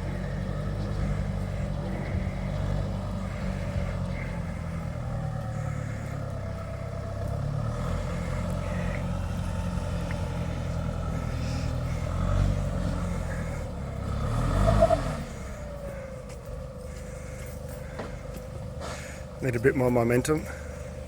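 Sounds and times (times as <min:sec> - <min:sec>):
off-road vehicle engine labouring: 0:00.0 - 0:21.0.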